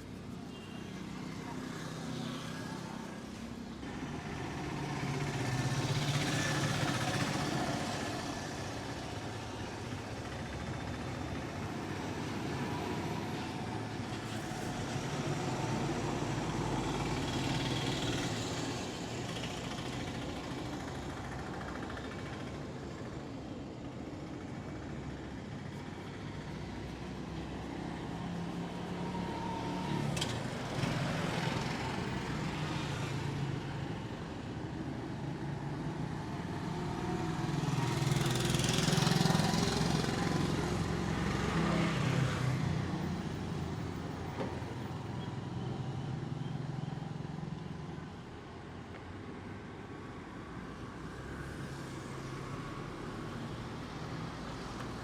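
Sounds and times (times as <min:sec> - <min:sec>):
vehicle engines running: 0:00.0 - 0:48.4
vehicles passing close by: 0:00.0 - 0:55.0.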